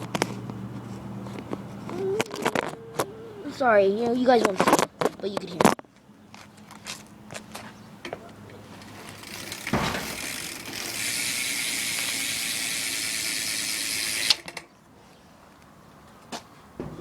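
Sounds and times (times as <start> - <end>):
bike hub ratcheting: 8.8 - 14.6.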